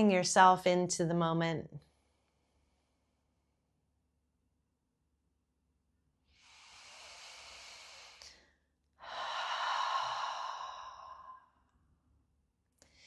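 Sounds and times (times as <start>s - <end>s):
woman breathing in: 6.3s - 11.6s.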